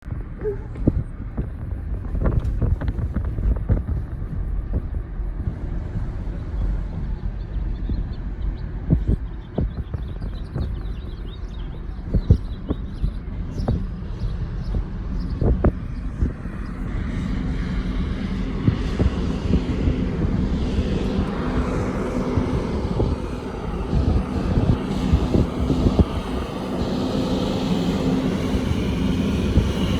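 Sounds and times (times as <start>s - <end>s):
moving car rumble: 0.0s - 29.9s
road noise: 0.0s - 29.9s
wind noise: 0.0s - 29.9s.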